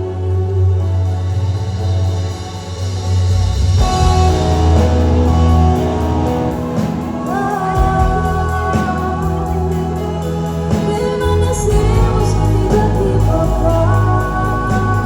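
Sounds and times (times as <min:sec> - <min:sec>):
band with guitar and drums: 0:00.0 - 0:15.0
person singing: 0:03.8 - 0:15.0.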